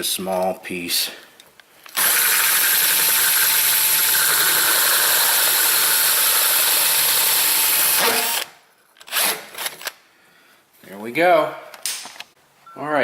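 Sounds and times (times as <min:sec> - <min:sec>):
power drill boring through wood: 0:01.9 - 0:08.5.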